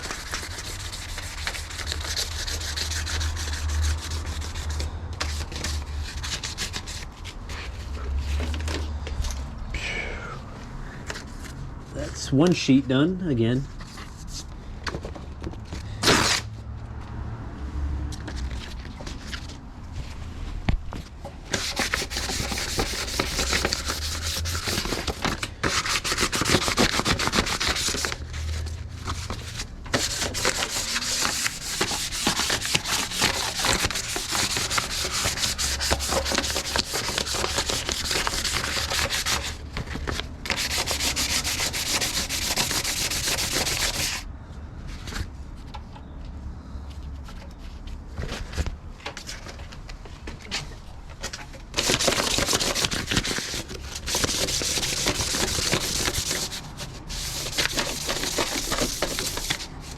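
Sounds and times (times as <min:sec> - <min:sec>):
sandpaper rubbing on sheet metal: 0:00.0 - 0:07.7, 0:21.5 - 0:39.6, 0:40.5 - 0:44.2, 0:51.8 - 0:59.9.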